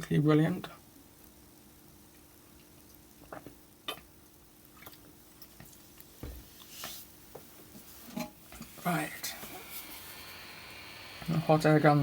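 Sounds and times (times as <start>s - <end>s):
faint steady hum: 0.0s - 12.0s
soft thump: 6.2s - 6.5s.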